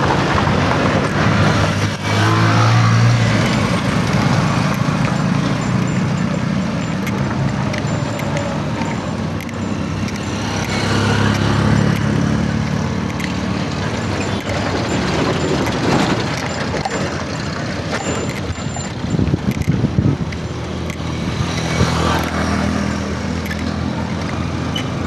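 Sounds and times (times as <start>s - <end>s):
vehicle engine and road rumble: 0.0s - 25.0s.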